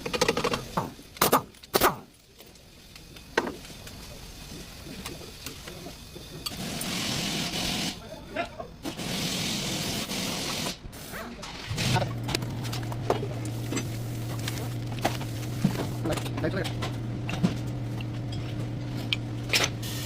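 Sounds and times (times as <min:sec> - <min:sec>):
steady hissing: 0:00.0 - 0:11.2, 0:19.8 - 0:20.0.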